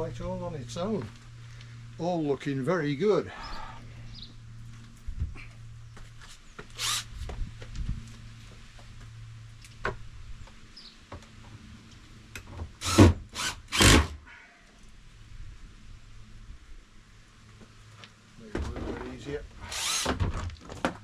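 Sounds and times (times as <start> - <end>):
loud rasping bursts: 6.7 - 7.1, 12.8 - 14.3, 19.6 - 20.2.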